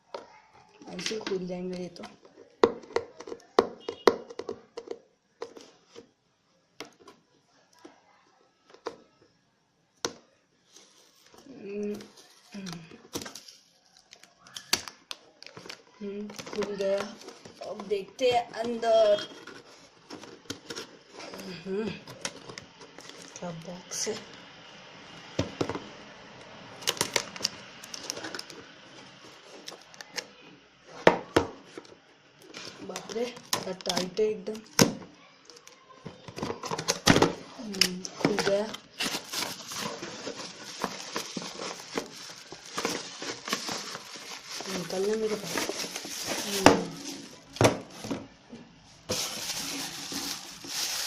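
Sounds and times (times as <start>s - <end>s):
faint rustling: 39.0s - 48.1s.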